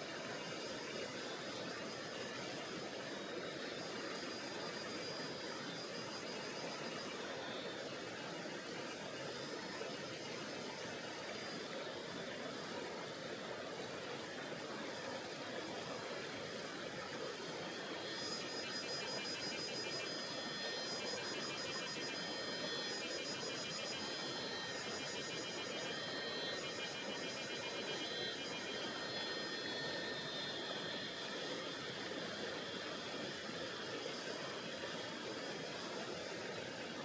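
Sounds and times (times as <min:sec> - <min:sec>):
high rapidly pulsing trill: 0:17.8 - 0:32.6.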